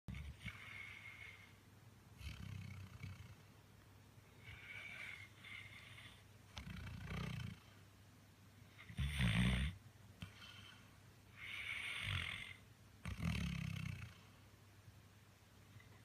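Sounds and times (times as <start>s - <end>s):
dog snoring: 0.1s - 1.6s, 2.2s - 3.4s, 4.4s - 7.7s, 8.7s - 10.8s, 11.4s - 14.3s.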